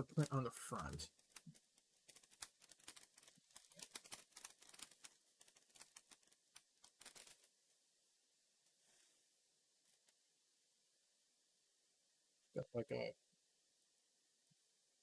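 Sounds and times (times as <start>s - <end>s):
plastic pieces clicking together: 0.1s - 7.5s.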